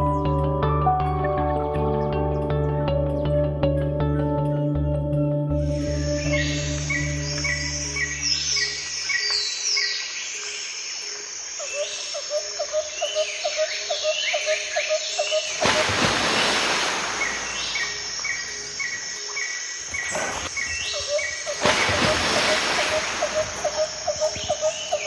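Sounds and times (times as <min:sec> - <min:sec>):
birds calling: 0:05.7 - 0:25.0
insects chirping: 0:05.7 - 0:25.0.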